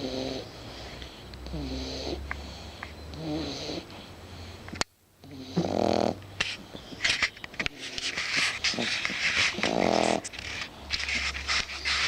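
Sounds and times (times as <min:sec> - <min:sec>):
puppy snoring: 0:00.0 - 0:04.0, 0:05.2 - 0:06.4, 0:07.7 - 0:10.6.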